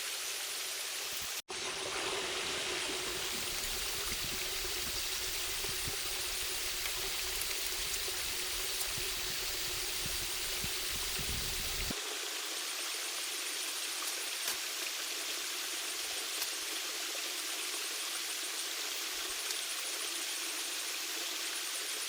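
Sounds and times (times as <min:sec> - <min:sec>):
stream trickling: 0:01.1 - 0:12.6.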